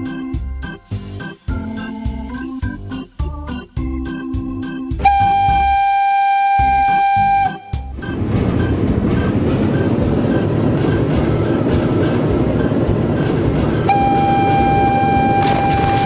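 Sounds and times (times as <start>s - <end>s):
rail clicks: 6.6s - 16.0s
train rushing rumble: 6.6s - 16.0s
long steady tone: 12.6s - 16.0s.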